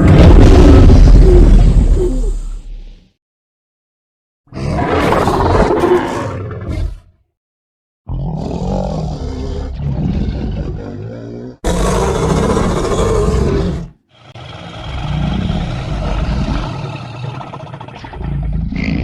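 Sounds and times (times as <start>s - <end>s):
monster growling roars: 0.0s - 2.4s, 8.1s - 19.0s.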